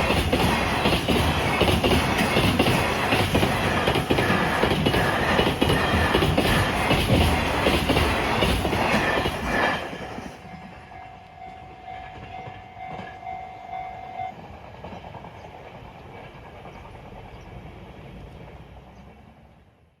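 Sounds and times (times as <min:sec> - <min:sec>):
train wheels clacking over rails: 0:00.0 - 0:19.4
level crossing warning bell: 0:10.4 - 0:14.5.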